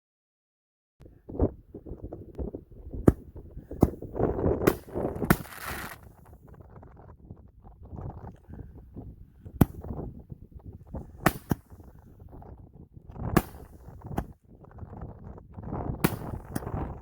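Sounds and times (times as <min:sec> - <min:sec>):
wind rumble on microphone: 0:01.0 - 0:17.0
firework bangs: 0:04.6 - 0:06.0, 0:16.0 - 0:16.7.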